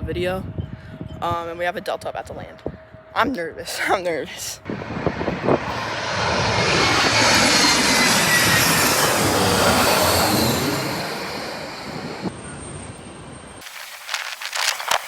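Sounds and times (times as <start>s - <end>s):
jet engines passing overhead: 4.6s - 13.8s.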